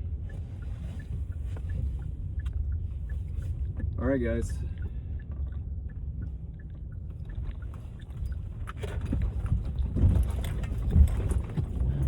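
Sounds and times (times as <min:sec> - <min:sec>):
low rumble inside vehicle cabin: 0:00.0 - 0:12.0
vehicle bumps and knocks: 0:08.6 - 0:12.0.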